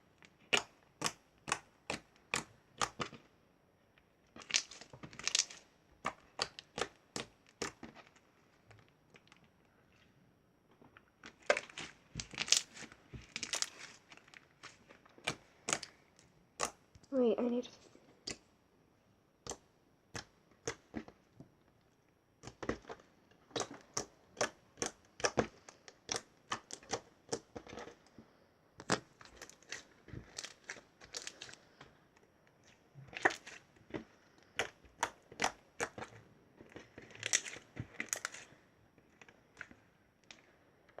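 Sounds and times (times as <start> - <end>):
slime clicking and popping: 0.2 - 3.2, 4.3 - 8.0, 11.2 - 17.1, 18.2 - 18.5, 19.4 - 21.2, 22.4 - 28.0, 34.4 - 36.2.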